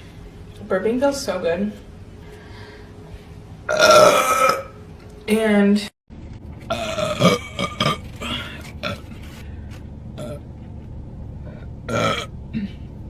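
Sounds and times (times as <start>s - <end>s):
woman burping: 3.7s - 4.8s, 6.7s - 9.1s, 11.9s - 12.9s.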